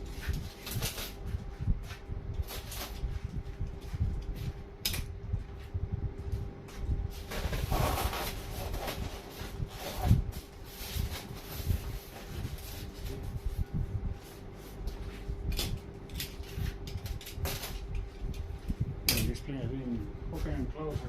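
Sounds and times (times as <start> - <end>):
cardboard box rustling and scraping: 7.1 - 13.3.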